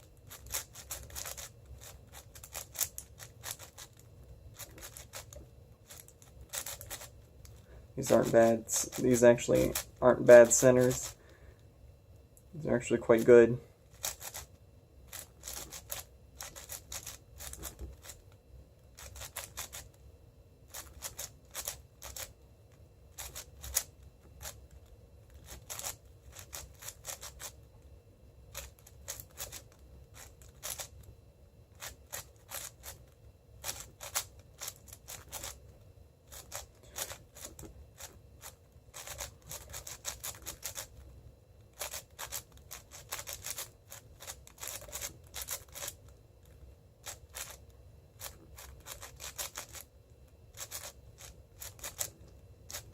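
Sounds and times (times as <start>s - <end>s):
puzzle cube plastic clicks: 50.6s - 52.1s.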